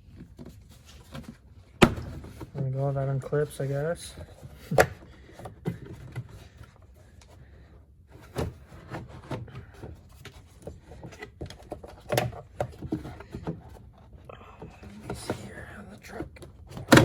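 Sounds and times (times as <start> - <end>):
plastic clicks and knocks: 16.2 - 17.0.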